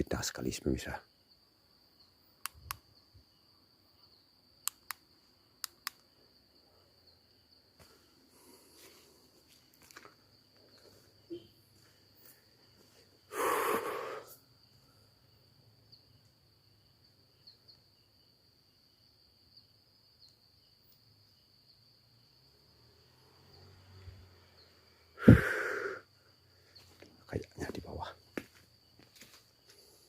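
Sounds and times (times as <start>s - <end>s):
high-pitched insect drone: 10.4s - 18.4s, 19.5s - 28.2s
loud exhale or sniff: 13.3s - 14.4s, 25.2s - 26.1s.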